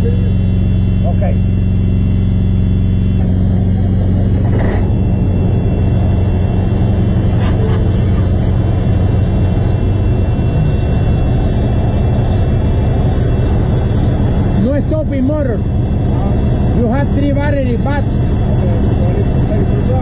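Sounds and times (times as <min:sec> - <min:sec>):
engine rumbling: 0:00.0 - 0:20.0.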